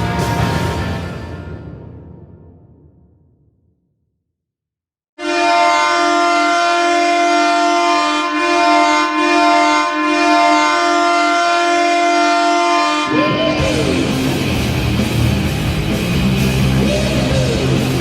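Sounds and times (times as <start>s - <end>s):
air horn long blast: 0.0s - 2.0s, 5.2s - 14.3s.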